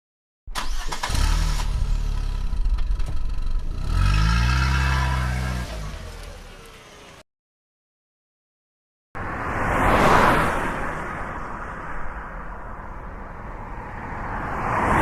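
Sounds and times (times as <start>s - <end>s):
car engine starting and revving: 0.6s - 7.2s.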